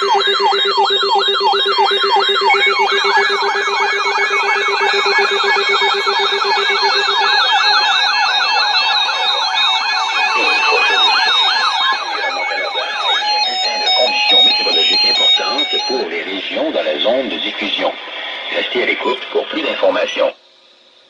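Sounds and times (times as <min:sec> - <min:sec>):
siren-like rising pitch sweeps: 0:00.0 - 0:16.0
steady and stepped beeping tones: 0:00.0 - 0:19.2.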